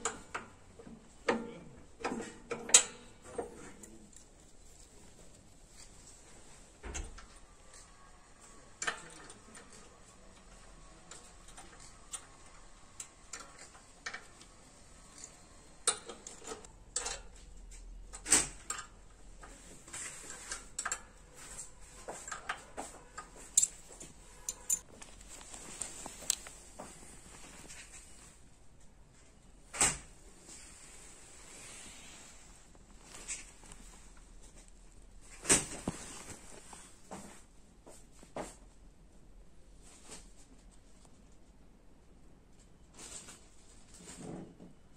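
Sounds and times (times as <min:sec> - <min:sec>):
metal parts clanking: 0:23.5 - 0:25.2.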